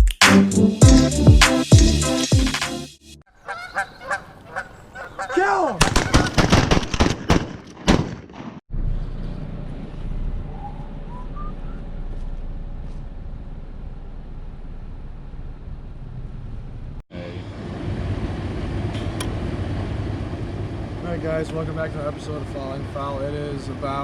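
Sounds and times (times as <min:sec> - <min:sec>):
geese honking: 0:03.3 - 0:06.4
shotgun blasts: 0:05.8 - 0:08.6
low outdoor rumble: 0:08.7 - 0:24.0.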